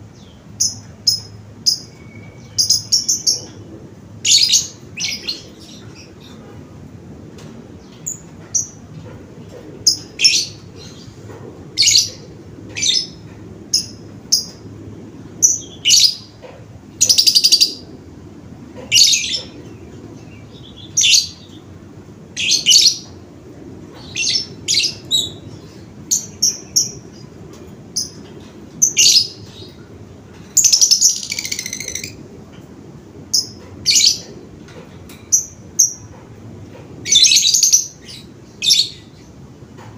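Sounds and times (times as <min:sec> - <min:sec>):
bird chirping: 0:00.1 - 0:03.6, 0:30.6 - 0:32.2.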